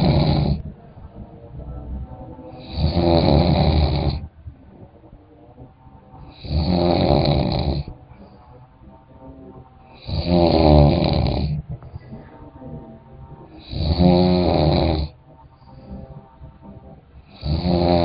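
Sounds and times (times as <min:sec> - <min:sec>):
person snoring: 0:00.0 - 0:00.7, 0:02.5 - 0:04.3, 0:06.2 - 0:08.6, 0:09.8 - 0:12.3, 0:13.4 - 0:16.0, 0:17.2 - 0:18.0
quiet breathing: 0:00.0 - 0:18.0.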